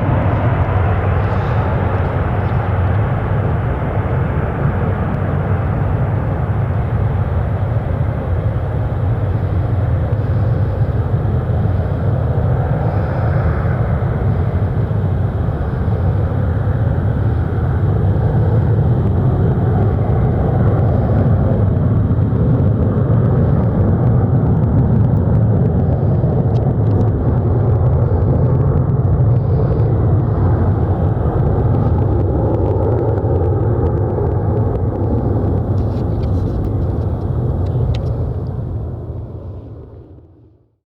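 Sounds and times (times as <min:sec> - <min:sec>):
jet engine rumble: 0:00.0 - 0:40.8.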